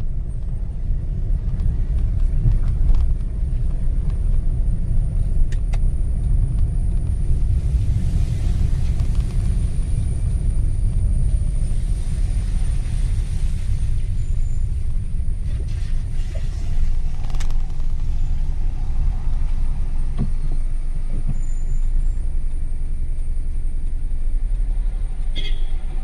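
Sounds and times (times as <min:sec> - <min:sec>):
road vehicle rumble: 0:00.0 - 0:26.0.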